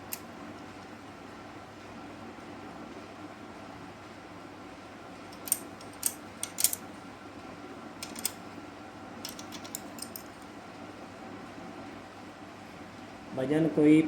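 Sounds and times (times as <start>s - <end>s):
steady background hum: 0.0s - 14.0s
metal tools clinking on engine parts: 9.3s - 10.4s.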